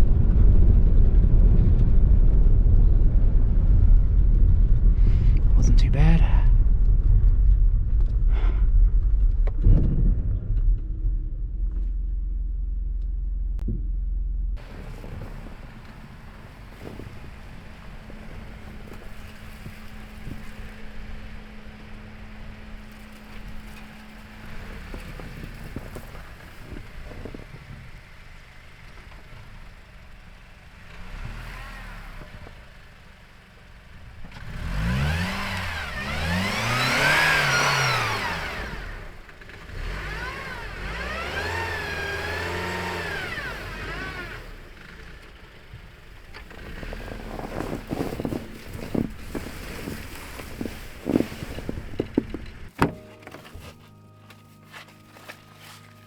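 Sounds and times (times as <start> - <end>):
low driving rumble: 0.0 - 56.0
car engine revving: 11.2 - 56.0.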